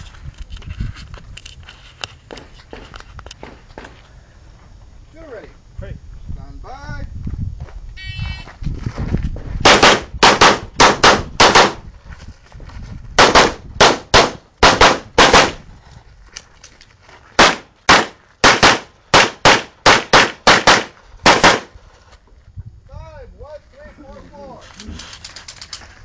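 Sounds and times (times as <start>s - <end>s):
rapid gunfire: 9.6s - 11.8s, 13.2s - 15.6s, 17.4s - 21.7s.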